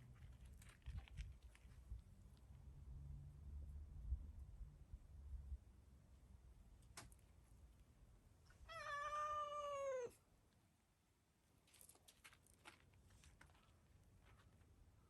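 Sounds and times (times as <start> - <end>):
cat meowing: 8.6 - 10.2.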